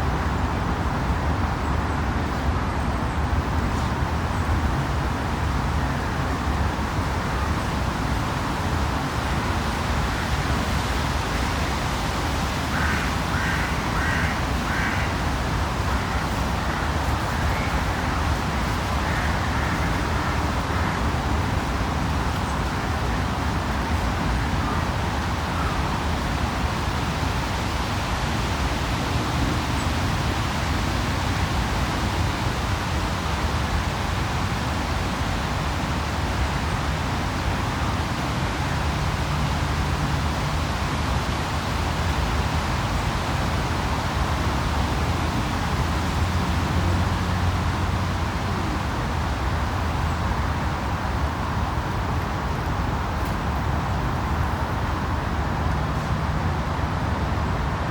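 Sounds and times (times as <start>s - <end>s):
low traffic rumble: 0.0s - 57.9s
crow cawing: 12.7s - 15.2s, 19.0s - 21.0s.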